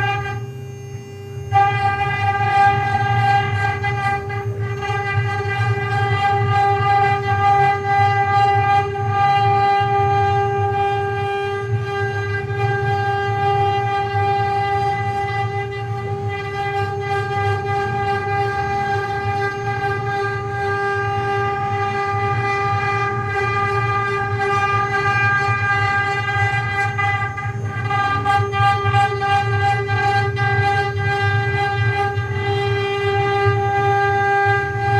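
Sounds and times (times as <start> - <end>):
wood-carving router running: 0.0 - 34.9.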